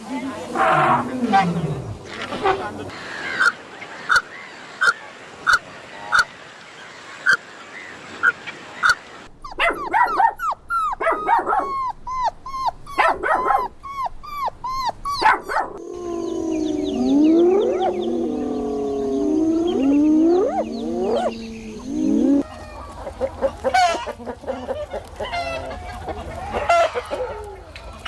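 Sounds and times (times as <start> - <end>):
dog yipping: 9.5 - 18.4
dog whimpering and yelping: 9.5 - 22.4.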